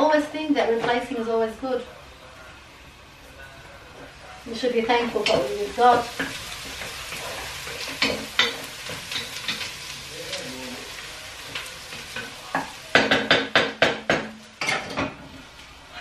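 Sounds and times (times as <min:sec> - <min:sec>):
food sizzling in a pot: 0:00.0 - 0:16.0
utensil knocking on pot: 0:12.5 - 0:14.4.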